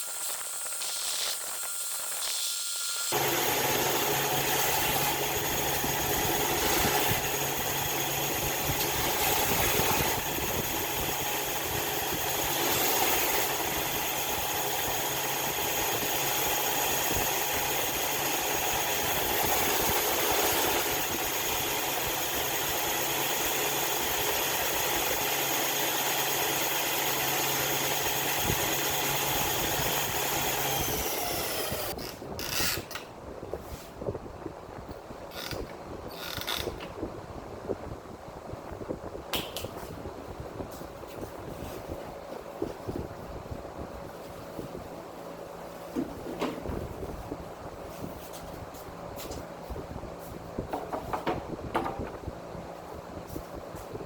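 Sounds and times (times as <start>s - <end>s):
power tool motor whine: 0.0s - 33.0s
sharp knocks: 50.7s - 52.2s.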